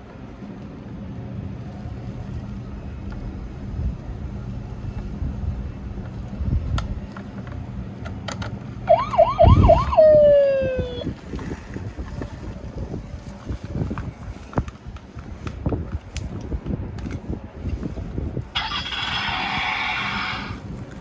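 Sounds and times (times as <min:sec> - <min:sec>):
toy siren wailing: 0:08.9 - 0:11.1, 0:18.6 - 0:20.5.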